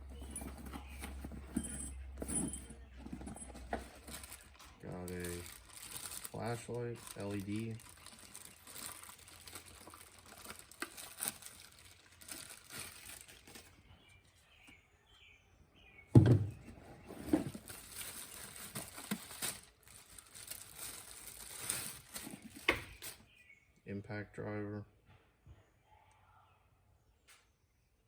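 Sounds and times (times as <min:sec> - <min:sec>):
plastic bag rustling: 0:00.0 - 0:14.2, 0:16.9 - 0:23.3.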